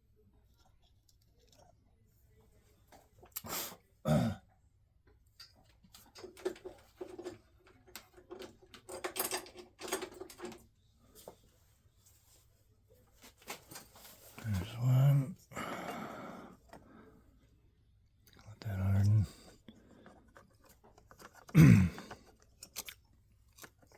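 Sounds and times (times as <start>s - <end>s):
clicks and knocks of small tools: 5.1s - 11.4s, 19.5s - 23.9s.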